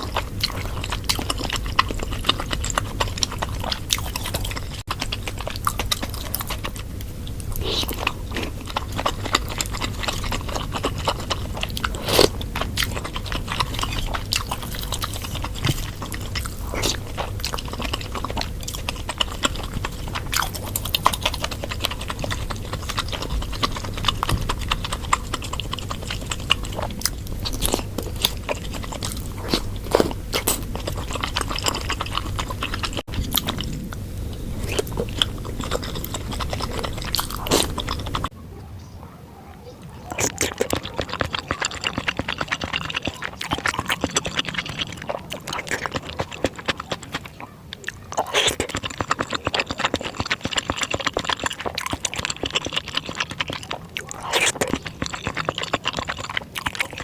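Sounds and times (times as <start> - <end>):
close chewing and biting: 0.0 - 38.4, 39.1 - 57.0.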